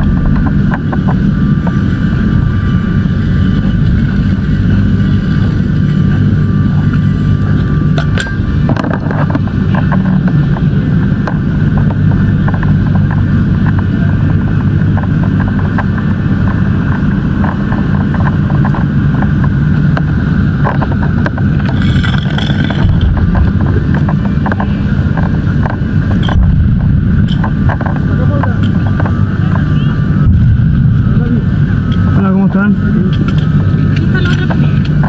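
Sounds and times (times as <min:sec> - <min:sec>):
crackles and clicks: 0:00.0 - 0:35.0
fire engine motor running: 0:00.0 - 0:35.0.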